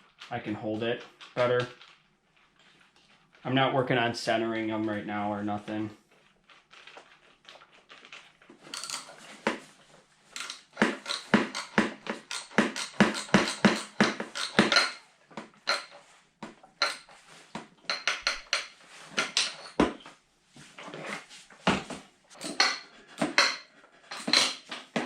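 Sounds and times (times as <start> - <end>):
metallic clicks of hand tools: 10.4 - 15.0, 17.9 - 19.8.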